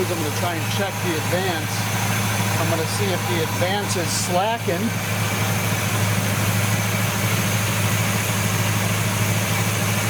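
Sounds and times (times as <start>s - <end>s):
car engine idling: 0.0s - 10.0s.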